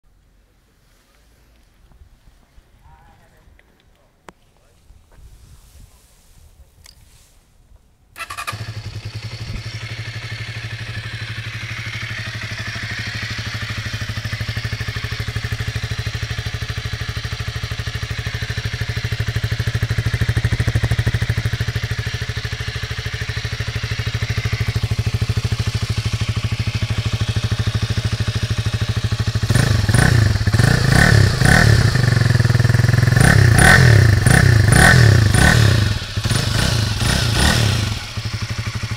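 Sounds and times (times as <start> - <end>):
motorcycle engine idling: 8.2 - 38.9
motorcycle engine revving: 8.2 - 38.9.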